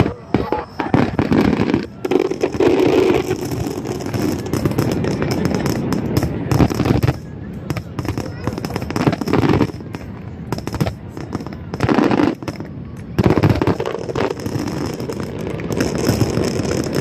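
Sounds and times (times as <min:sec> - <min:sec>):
fireworks bursts: 0:00.0 - 0:17.0
fireworks crackling pops: 0:00.0 - 0:17.0.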